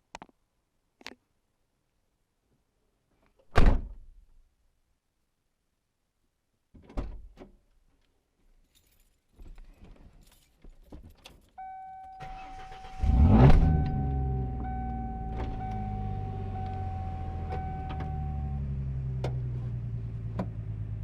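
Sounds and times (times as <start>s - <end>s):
keys jangling: 8.6s - 11.6s
car engine cranking and idling: 11.7s - 21.0s
electronic warning tone: 13.1s - 18.7s.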